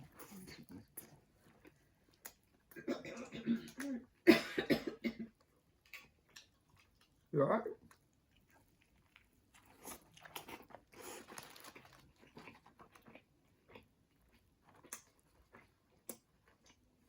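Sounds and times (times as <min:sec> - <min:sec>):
chewing and crunching sandwich: 0:00.0 - 0:02.8, 0:05.3 - 0:17.0.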